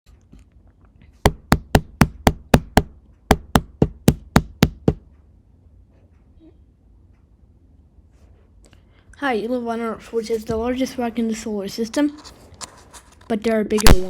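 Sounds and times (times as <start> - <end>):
sharp knocks: 1.2 - 5.1.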